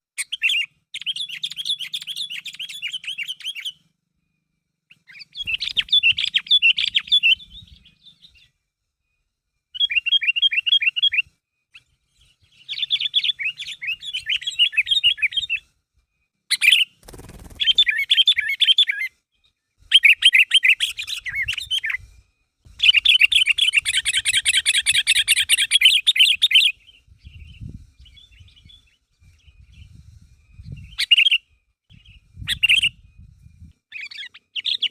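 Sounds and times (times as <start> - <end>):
bulbul rapid high calls: 16.6 - 18.7.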